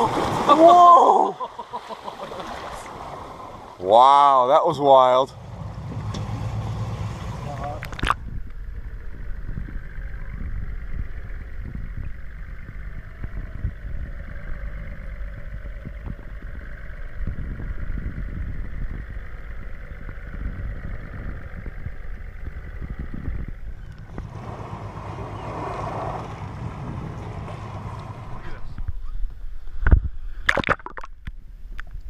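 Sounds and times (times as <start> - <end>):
boat engine running: 0.0 - 29.4
wind buffeting microphone: 5.3 - 30.2.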